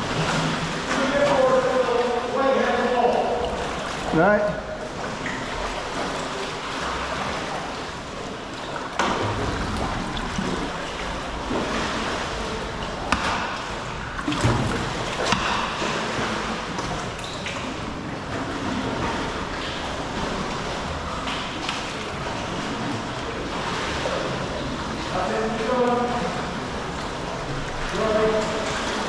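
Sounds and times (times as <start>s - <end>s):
water sloshing around kayak: 0.0s - 29.0s
sharp knocks: 13.0s - 13.7s.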